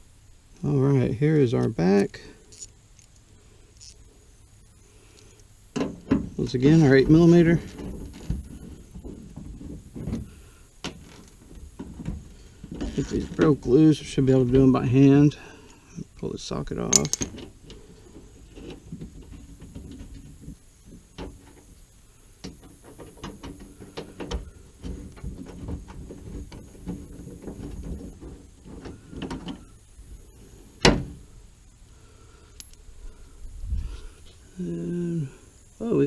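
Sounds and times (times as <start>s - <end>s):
hand tools clicking and scraping: 6.4s - 13.6s, 16.8s - 20.6s.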